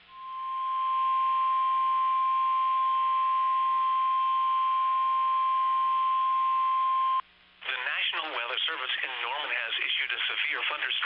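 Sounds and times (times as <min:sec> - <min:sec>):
loud steady alarm tone: 0:00.0 - 0:07.2
faint radio static hiss: 0:07.0 - 0:11.0.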